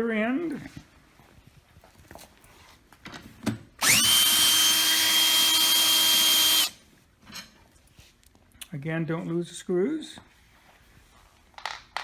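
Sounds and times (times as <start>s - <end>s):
cordless drill whining: 3.8s - 6.8s.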